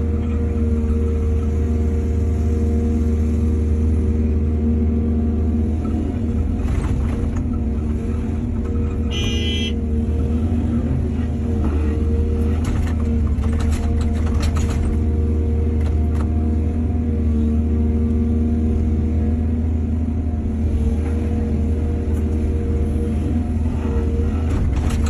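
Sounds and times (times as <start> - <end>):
excavator diesel engine running: 0.0 - 25.0
knocks and clatter: 12.5 - 15.1, 24.4 - 25.0.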